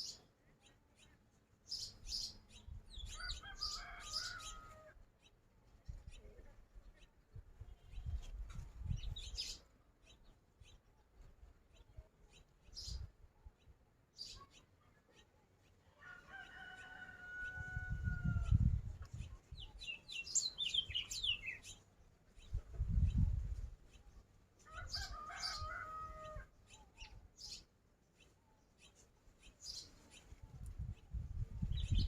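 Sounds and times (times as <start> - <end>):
small birds chirping: 0.0 - 32.0
rooster crowing: 3.2 - 4.9, 16.0 - 18.5, 24.7 - 26.5.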